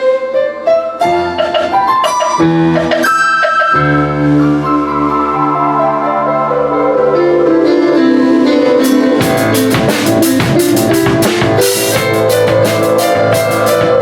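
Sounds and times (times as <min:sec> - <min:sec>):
keyboard playing chords: 0:00.0 - 0:14.0
drum kit with cymbal crashes: 0:08.8 - 0:14.0.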